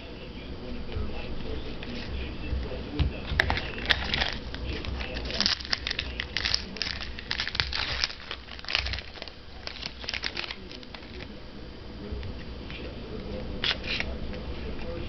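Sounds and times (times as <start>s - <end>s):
cards being handled: 3.0s - 11.4s, 12.3s - 14.7s
wrapper crinkling and tearing: 3.4s - 11.3s.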